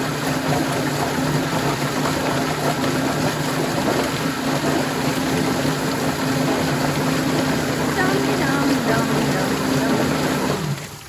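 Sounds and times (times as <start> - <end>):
spinning drum whirring: 0.0 - 11.0
electric motor humming: 6.4 - 10.8.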